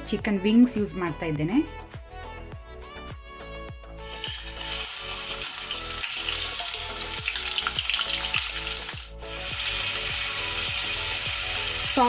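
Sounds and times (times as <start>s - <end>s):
chicken wings sizzling in oil: 4.0s - 12.0s.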